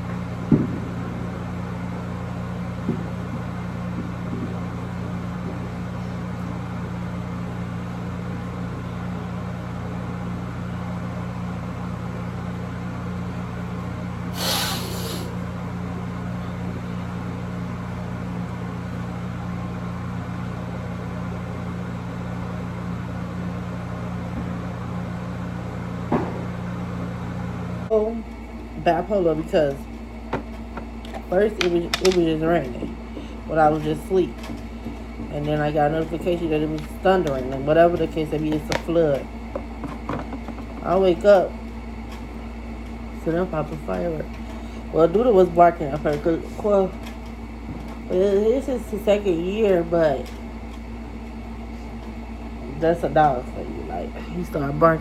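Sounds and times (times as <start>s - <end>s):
low mechanical hum: 0.0s - 55.0s
short hiss: 14.4s - 15.4s.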